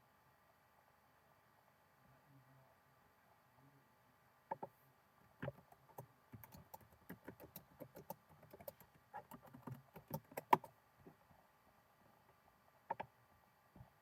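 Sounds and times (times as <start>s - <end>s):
keyboard key clicks: 5.4s - 10.7s.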